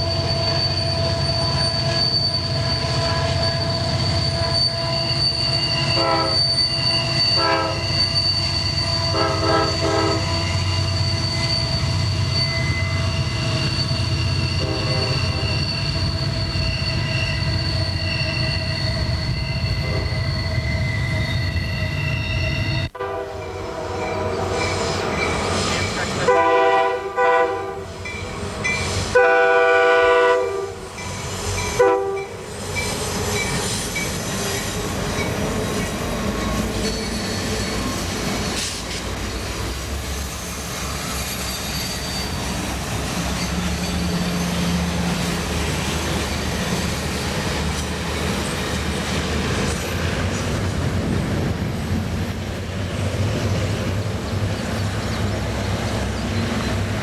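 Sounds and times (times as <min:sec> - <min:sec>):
train wheels on rails: 0:00.0 - 0:57.0
locomotive air horn blasts: 0:05.8 - 0:08.0, 0:08.9 - 0:10.7, 0:14.6 - 0:15.5, 0:22.9 - 0:24.6, 0:26.1 - 0:27.9, 0:29.1 - 0:30.8, 0:31.8 - 0:32.4.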